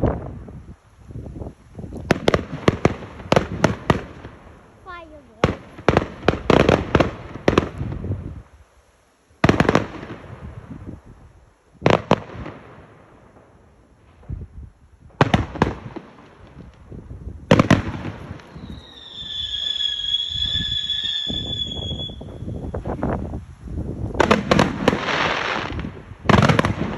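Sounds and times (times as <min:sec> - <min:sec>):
fireworks bangs: 0:02.0 - 0:08.4, 0:09.4 - 0:11.0, 0:11.8 - 0:23.4, 0:24.1 - 0:26.9
high whistle: 0:18.5 - 0:22.7.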